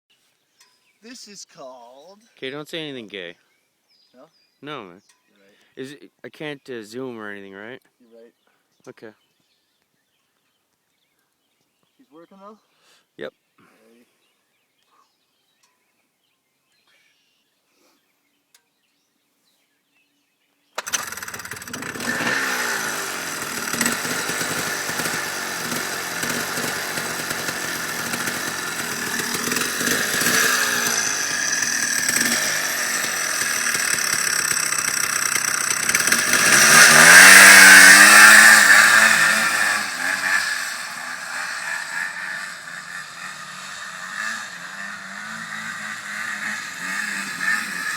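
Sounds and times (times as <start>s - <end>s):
engine revving: 20.8s - 47.9s.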